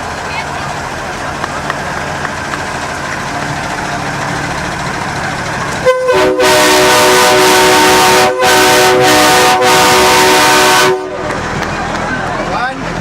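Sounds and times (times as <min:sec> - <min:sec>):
train horn blasts: 0:05.8 - 0:11.3.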